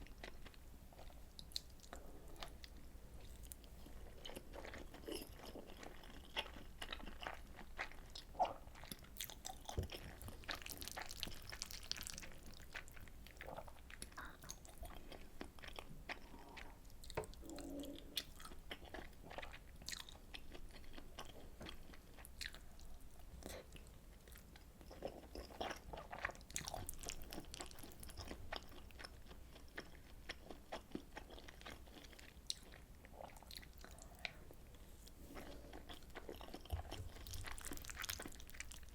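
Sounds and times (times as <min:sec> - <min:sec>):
person chewing food: 0:00.0 - 0:38.9.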